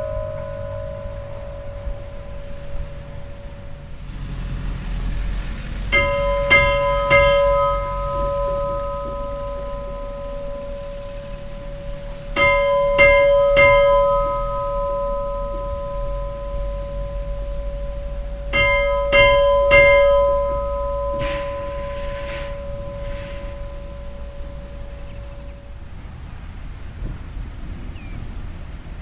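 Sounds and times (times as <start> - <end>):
church bell strikes: 0.0 - 25.9
soft hiss: 20.2 - 27.3.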